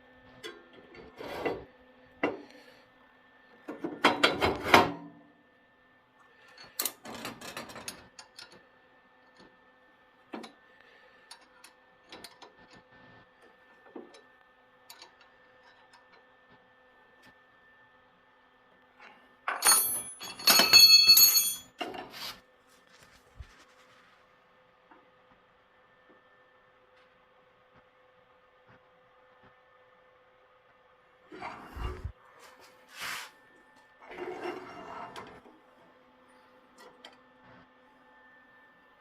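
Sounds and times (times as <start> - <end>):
objects scraping and rubbing: 1.0 - 1.7, 22.0 - 24.3, 31.3 - 33.4, 34.0 - 35.6.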